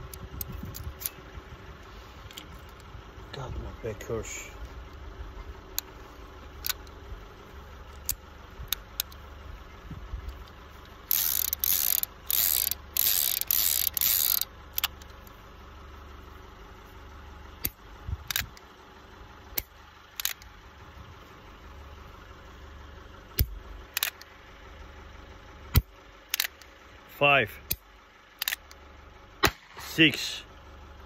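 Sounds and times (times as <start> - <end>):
revolver cylinder spinning: 11.0 - 15.1.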